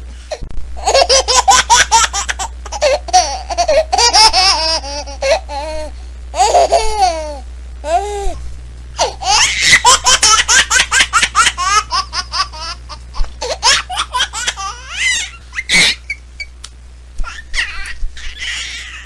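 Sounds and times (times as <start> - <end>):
baby laughing: 0.8 - 8.0, 9.0 - 16.5, 17.2 - 19.0.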